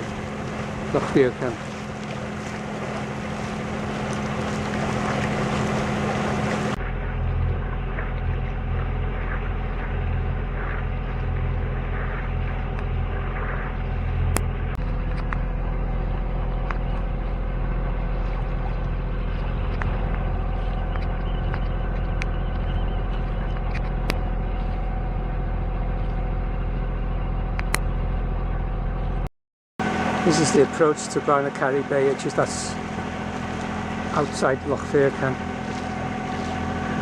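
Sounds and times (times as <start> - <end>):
wind and water rushing: 0.0 - 13.4, 29.8 - 37.0
boat engine drone: 0.0 - 37.0.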